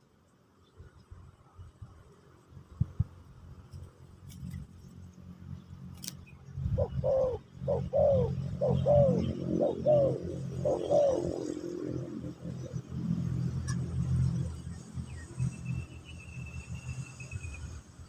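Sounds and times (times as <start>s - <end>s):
dove cooing: 6.7s - 12.7s.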